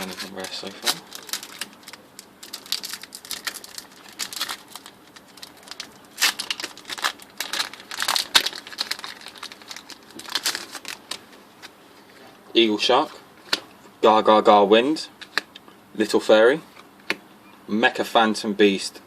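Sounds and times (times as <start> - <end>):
foil wrapper crinkling: 0.0 - 11.7.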